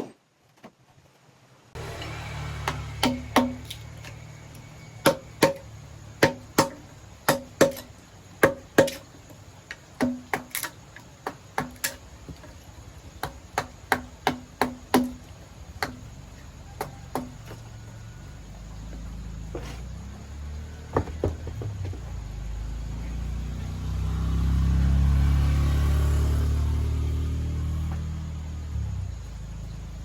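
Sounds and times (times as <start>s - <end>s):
hand tool striking wood: 1.8s - 4.2s, 5.0s - 16.1s, 16.8s - 17.6s.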